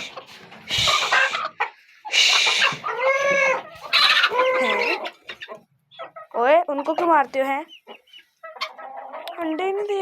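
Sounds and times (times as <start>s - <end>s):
chickens squawking: 0.0s - 10.0s.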